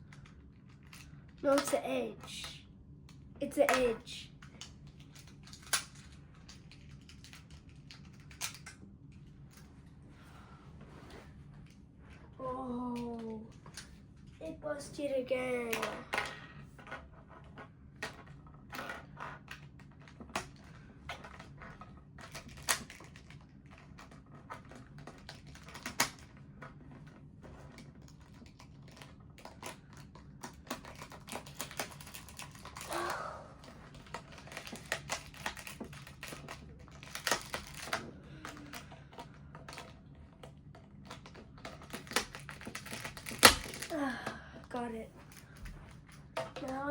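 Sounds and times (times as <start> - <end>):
plastic puzzle cube clicking: 33.9 - 43.9.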